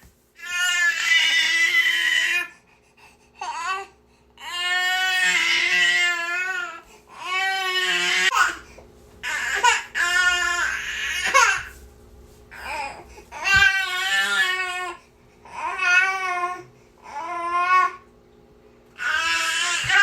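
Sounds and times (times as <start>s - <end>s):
baby crying: 3.4s - 8.6s, 9.2s - 11.7s, 12.5s - 18.0s, 19.0s - 20.0s.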